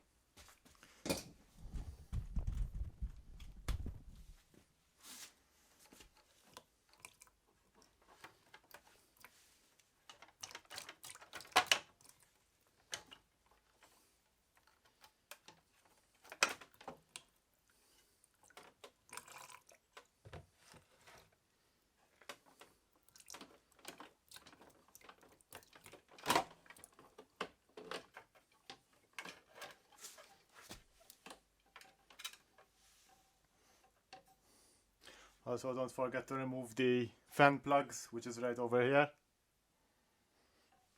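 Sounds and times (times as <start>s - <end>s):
tools and parts clicking: 31.2s - 32.7s.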